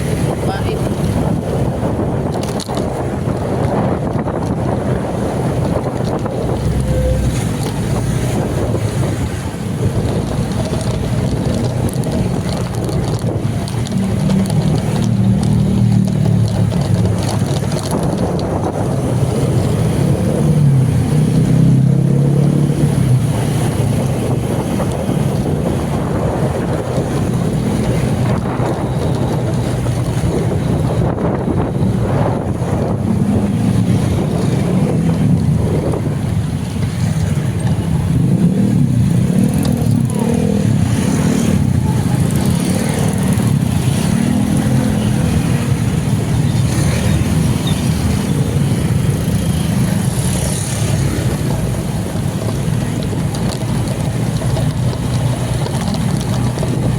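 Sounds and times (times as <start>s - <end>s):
road noise: 0.0s - 56.9s
vehicle engine running: 0.0s - 56.9s
wind buffeting microphone: 0.0s - 56.9s.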